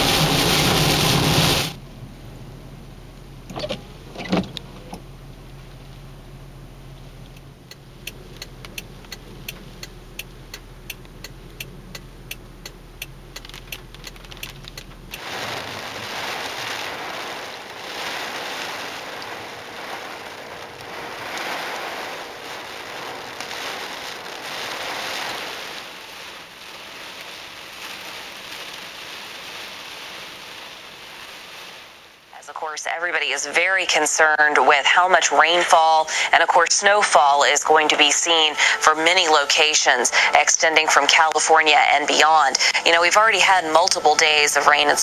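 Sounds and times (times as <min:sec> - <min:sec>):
low hum: 0:00.0 - 0:27.0
gusting wind: 0:00.0 - 0:45.0
heavy rain: 0:00.0 - 0:45.0
sharp ticks: 0:07.2 - 0:15.2.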